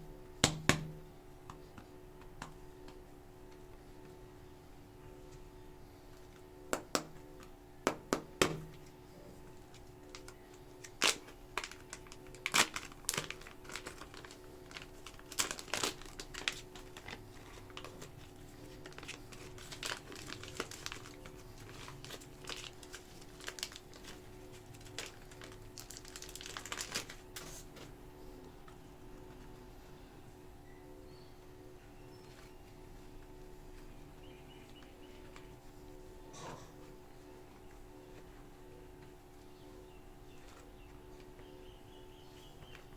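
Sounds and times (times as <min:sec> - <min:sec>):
plastic packaging crinkling: 0:09.6 - 0:27.8.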